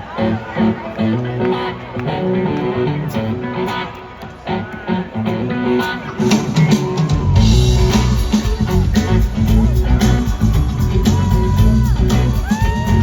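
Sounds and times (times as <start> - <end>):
electric guitar: 0.0 - 13.0
live rock band: 0.0 - 13.0
bass and drums: 5.2 - 13.0.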